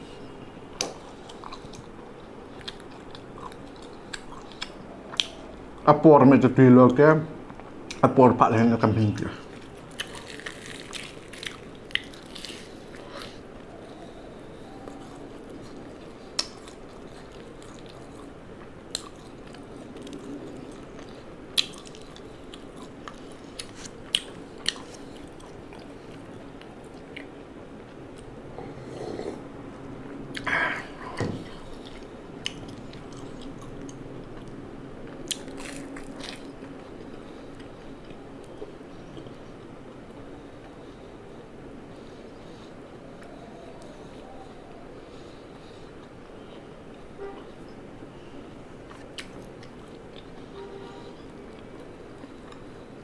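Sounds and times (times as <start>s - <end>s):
person chewing food: 0.2s - 5.8s, 9.4s - 41.0s, 48.5s - 50.5s, 51.2s - 53.0s.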